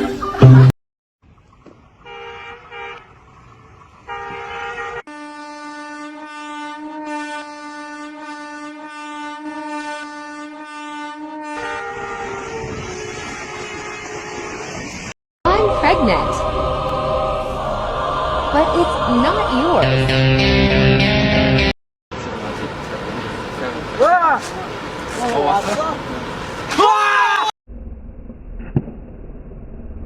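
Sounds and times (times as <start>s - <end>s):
horn blasts: 4.1s - 14.9s
noisy rumbling: 14.5s - 20.3s.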